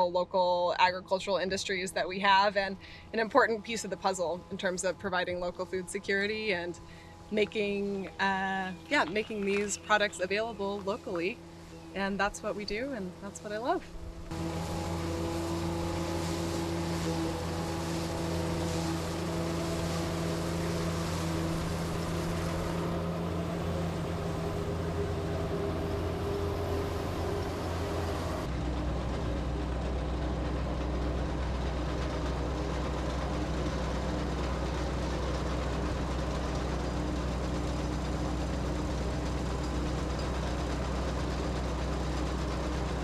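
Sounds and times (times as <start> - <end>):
farm machinery engine running: 0.0 - 43.0.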